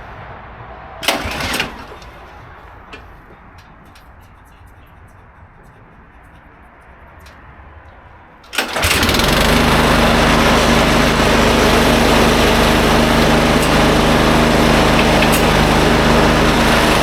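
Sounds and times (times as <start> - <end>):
snowblower engine starting and running: 1.0 - 4.3, 8.4 - 17.0.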